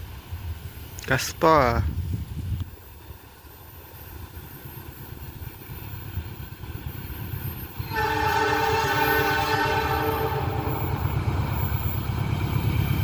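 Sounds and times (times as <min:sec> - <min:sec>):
train rumbling: 0:00.0 - 0:13.0
train horn chord: 0:07.8 - 0:11.3.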